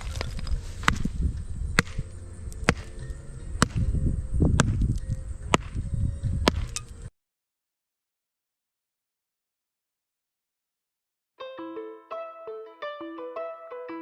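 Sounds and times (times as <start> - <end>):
low rumble: 0.0 - 7.1.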